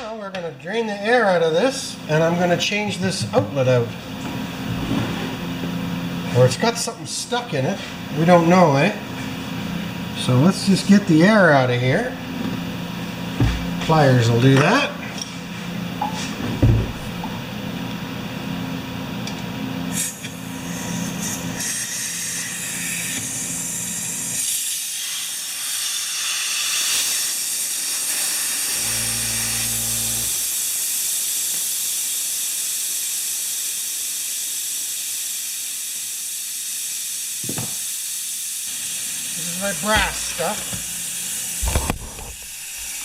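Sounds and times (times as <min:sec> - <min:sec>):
compressed air hissing: 0:19.9 - 0:28.8, 0:30.0 - 0:43.0.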